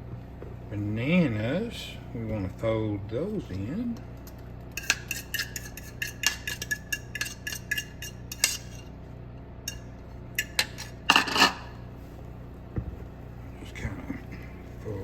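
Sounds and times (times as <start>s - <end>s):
utensil scraping mixing bowl: 4.2s - 8.8s.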